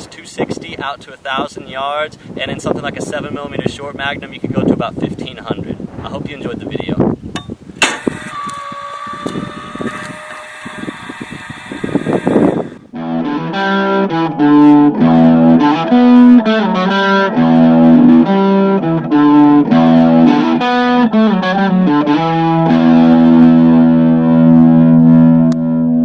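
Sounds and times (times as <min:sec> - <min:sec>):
distorted electric guitar riff: 0:08.0 - 0:26.0.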